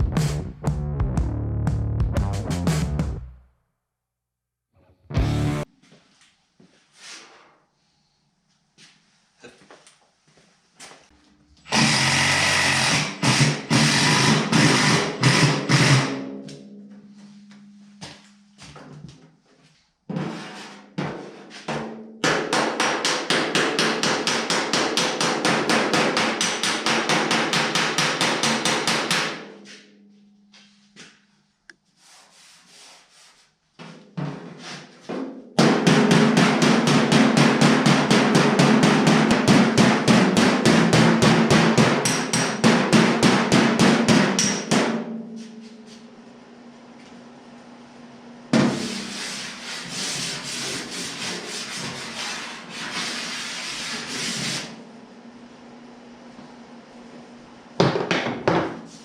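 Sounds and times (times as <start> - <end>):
power hammer blows on steel: 11.7 - 16.2.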